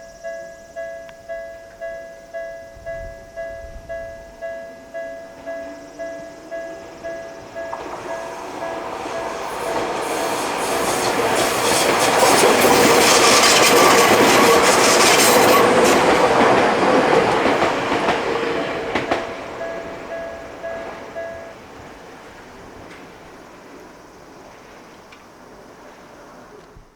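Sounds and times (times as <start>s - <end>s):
level crossing warning bell: 0.1s - 23.4s
train passing: 0.7s - 26.9s
wheel clatter over rail joints: 6.7s - 23.6s.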